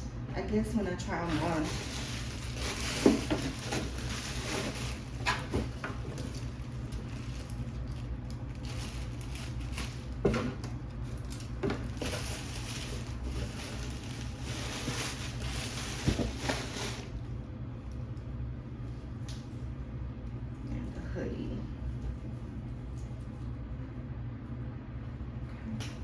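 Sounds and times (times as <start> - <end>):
plastic packaging crinkling: 1.3 - 10.2, 10.9 - 17.1.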